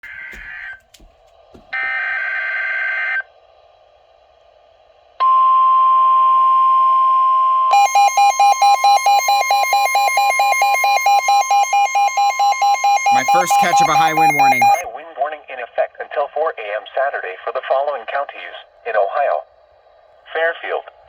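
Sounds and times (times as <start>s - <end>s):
screeching data burst: 7.7s - 14.8s
rapid alarm beeping: 7.7s - 14.9s
steady warning tone: 7.7s - 14.9s.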